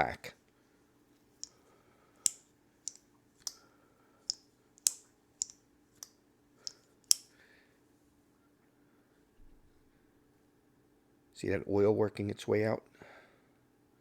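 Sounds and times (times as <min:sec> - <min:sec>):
pocketknife blade clicking: 0:02.3 - 0:03.6, 0:04.3 - 0:06.1, 0:06.7 - 0:07.3.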